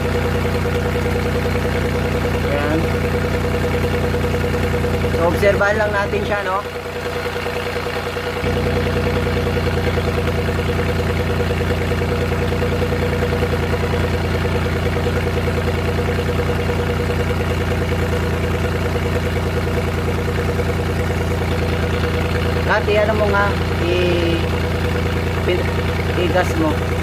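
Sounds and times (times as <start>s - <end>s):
engine idling: 0.0s - 27.0s.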